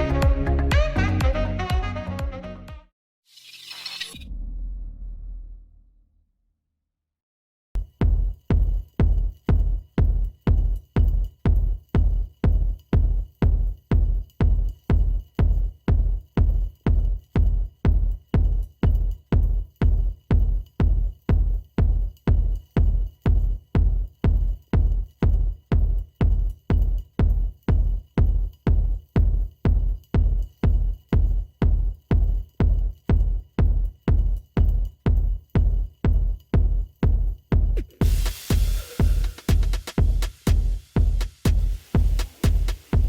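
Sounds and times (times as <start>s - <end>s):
electronic music: 0.0s - 2.9s, 37.8s - 43.0s
heavy kick drum thumping: 7.8s - 43.0s.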